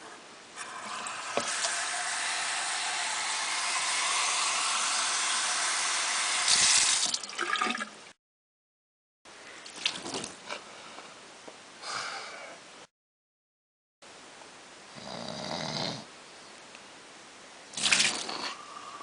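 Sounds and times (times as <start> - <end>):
water pouring: 0.6 - 8.0, 9.6 - 10.4, 17.8 - 18.6.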